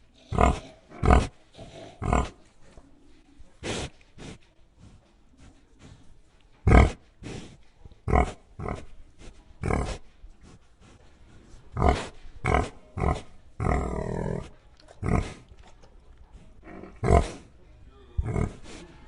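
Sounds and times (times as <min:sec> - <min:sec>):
pig grunting: 0:00.0 - 0:02.5, 0:08.0 - 0:08.9, 0:09.6 - 0:10.0, 0:11.7 - 0:15.6, 0:16.6 - 0:17.5, 0:18.2 - 0:18.8.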